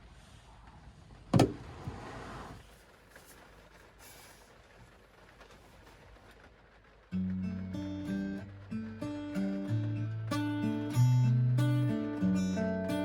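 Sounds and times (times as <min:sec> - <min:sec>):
rustle: 0:00.0 - 0:07.7
acoustic guitar playing: 0:07.1 - 0:13.0.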